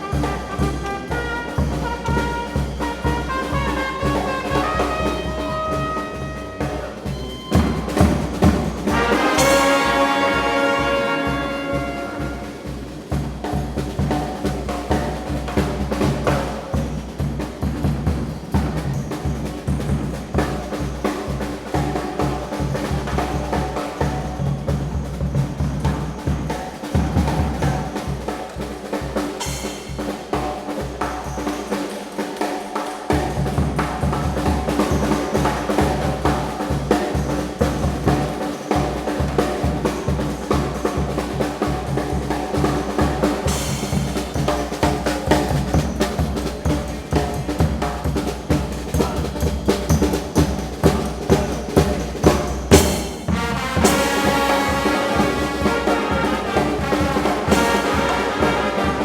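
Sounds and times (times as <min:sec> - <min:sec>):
brass band music: 0:00.0 - 0:14.2, 0:40.8 - 0:46.0, 0:52.7 - 0:59.0
snare and bass drum beat: 0:00.0 - 0:59.0.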